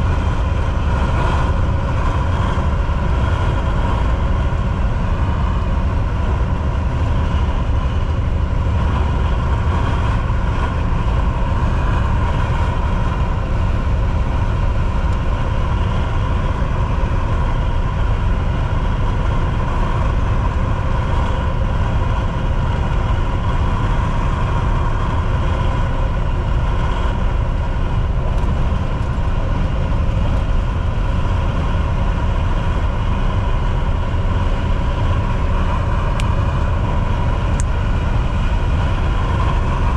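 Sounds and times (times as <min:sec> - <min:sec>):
truck diesel engine cruising: 0:00.0 - 0:39.9
tyre and road noise: 0:00.0 - 0:39.9.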